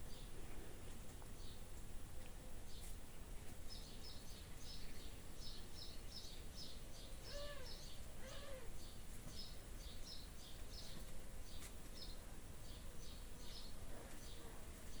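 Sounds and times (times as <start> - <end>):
small bird chirping: 3.7 - 15.0.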